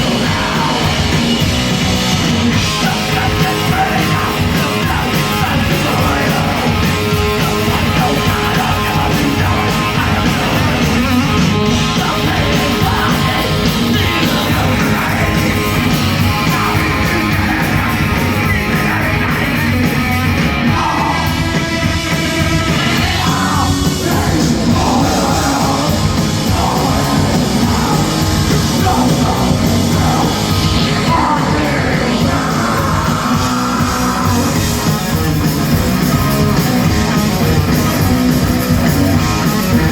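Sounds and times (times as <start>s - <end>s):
metal band playing: 0.0s - 39.9s
yelled vocals: 0.0s - 39.9s.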